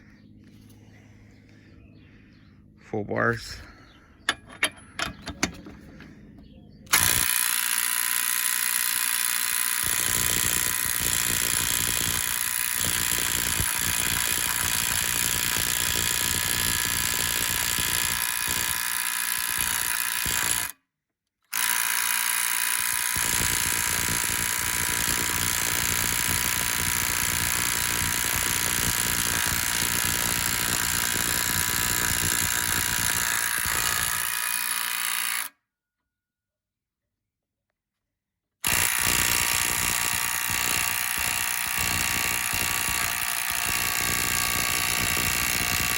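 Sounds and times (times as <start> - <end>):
impact wrench hammering on bolt: 38.6 - 45.9.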